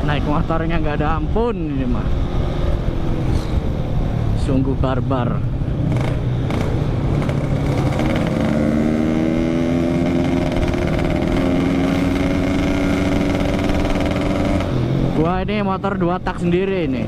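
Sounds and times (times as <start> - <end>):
motorcycle engine running: 5.6 - 15.2.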